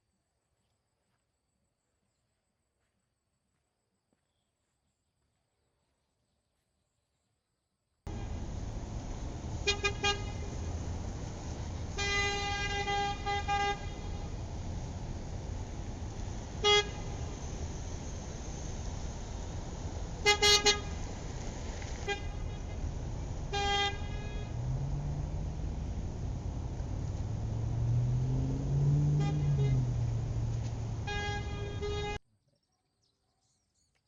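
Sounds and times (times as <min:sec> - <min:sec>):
vehicle horn tooting: 0:08.1 - 0:08.6, 0:09.5 - 0:10.7, 0:11.9 - 0:14.4, 0:16.6 - 0:17.5, 0:20.2 - 0:21.0, 0:22.0 - 0:25.6, 0:27.3 - 0:32.2
low traffic rumble: 0:08.1 - 0:32.2.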